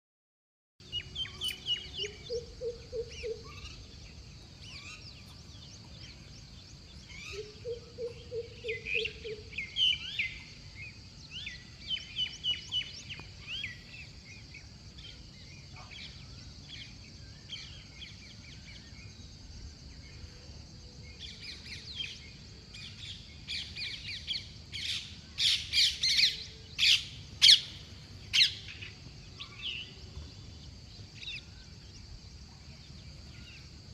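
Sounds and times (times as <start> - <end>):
songbirds chirping and trilling: 0.8 - 33.9
steady high hiss: 8.2 - 33.9.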